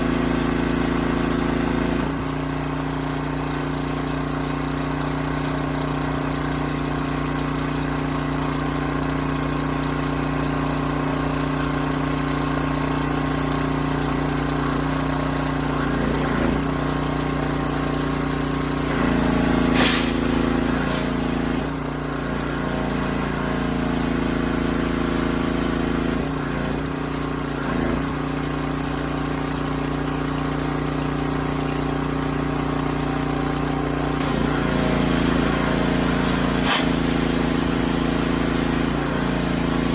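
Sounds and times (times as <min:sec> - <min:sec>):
pressure washer engine running: 0:00.0 - 0:39.9
short sharp hiss: 0:19.6 - 0:21.3, 0:34.2 - 0:38.3.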